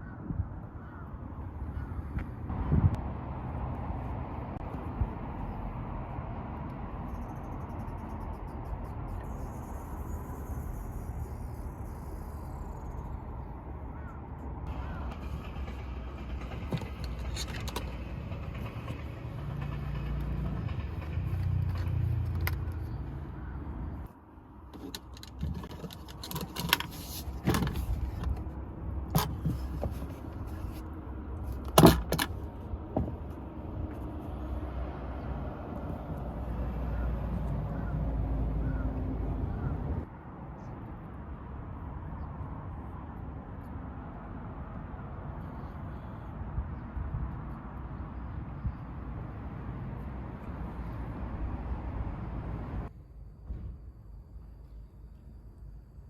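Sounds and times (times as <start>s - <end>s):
low vehicle rumble: 0.3s - 54.7s
sharp clicks and knocks: 14.7s - 23.0s.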